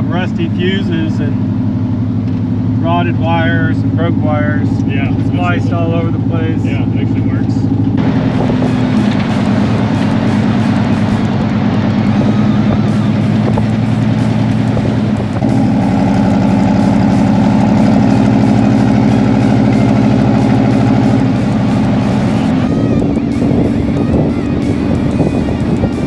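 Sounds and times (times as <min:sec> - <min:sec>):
pickup truck engine running: 0:00.0 - 0:26.0.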